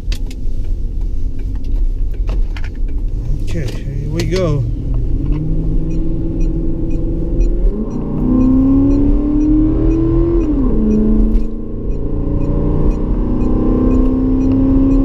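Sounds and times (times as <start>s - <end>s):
engine accelerating through gears: 2.9s - 15.0s.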